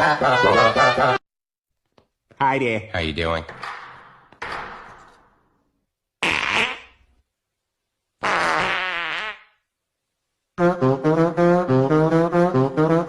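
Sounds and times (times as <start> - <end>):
fart sound effects: 6.2 - 7.1, 8.2 - 9.6.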